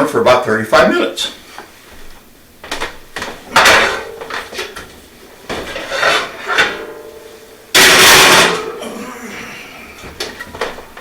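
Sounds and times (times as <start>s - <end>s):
baking dish clattering in oven: 2.8s - 8.8s.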